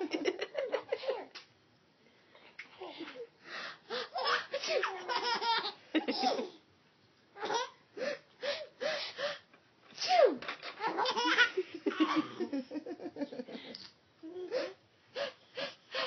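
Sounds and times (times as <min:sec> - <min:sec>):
baby giggling and laughing: 0:04.0 - 0:06.6, 0:10.8 - 0:12.6
baby sneezing: 0:10.0 - 0:10.4.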